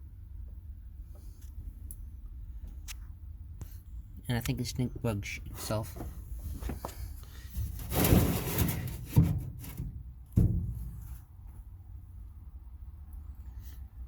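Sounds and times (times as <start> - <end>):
shim scraping slide: 7.5 - 9.9.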